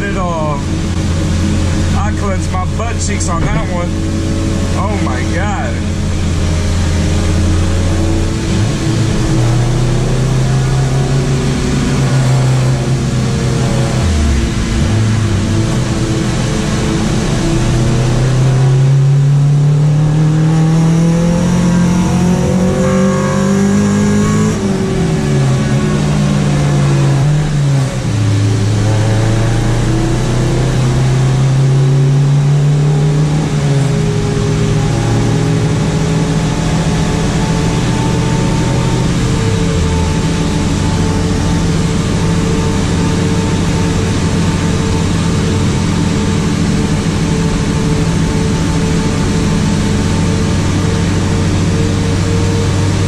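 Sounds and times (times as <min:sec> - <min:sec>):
car engine accelerating: 0:00.0 - 0:53.0.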